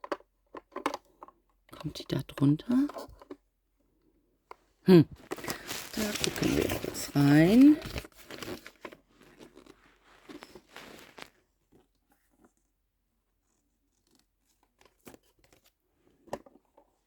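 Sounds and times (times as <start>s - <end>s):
faint plastic rustling: 4.5s - 17.0s.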